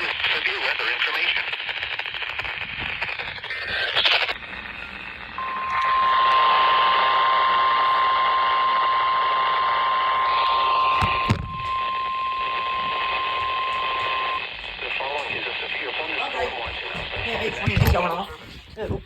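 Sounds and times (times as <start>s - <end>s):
radio static hiss: 0.0s - 19.0s
steady alarm tone: 4.8s - 18.6s.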